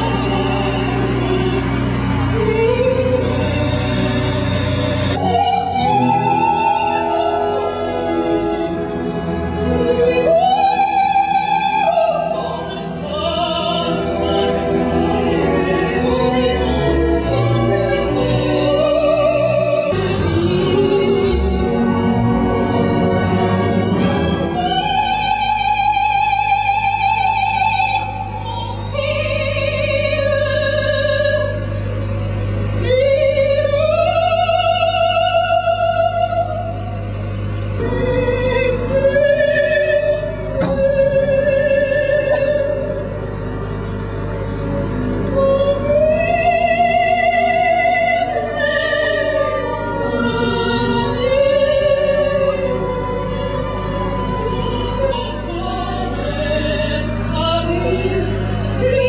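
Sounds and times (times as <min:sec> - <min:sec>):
low hum: 0:00.0 - 0:59.0
operatic melody with vibrato: 0:00.0 - 0:59.0.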